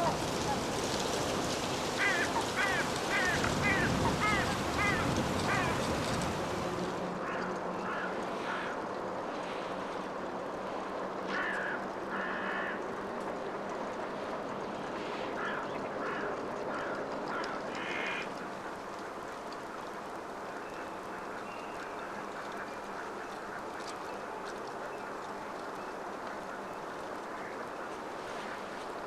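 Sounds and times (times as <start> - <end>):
gulls calling: 0.0 - 8.8
background rush: 0.0 - 29.0.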